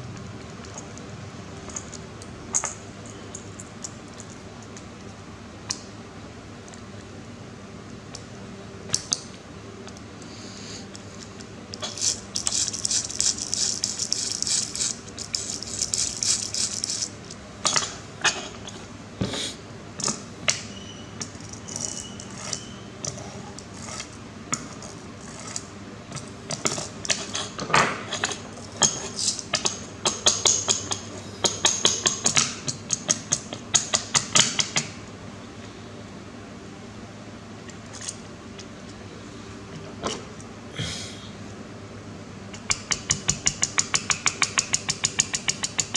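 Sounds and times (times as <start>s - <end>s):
low steady hum: 0.0s - 32.0s
small parts clicking and tapping: 10.9s - 17.9s, 21.2s - 34.9s, 42.6s - 45.9s.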